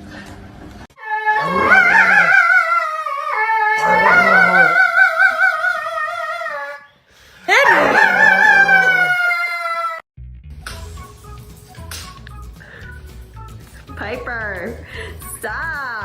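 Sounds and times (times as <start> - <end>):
dog howling: 1.0 - 6.9, 7.5 - 10.0.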